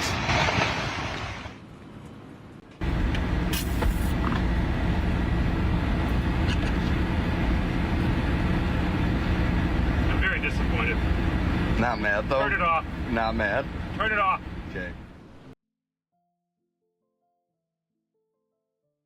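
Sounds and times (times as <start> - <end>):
engine running: 1.6 - 15.6.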